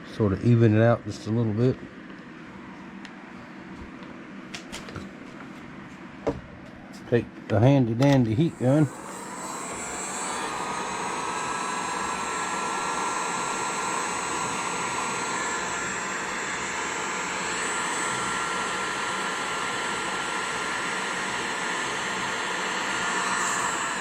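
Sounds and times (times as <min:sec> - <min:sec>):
heat gun blowing with motor whine: 0:08.0 - 0:24.0.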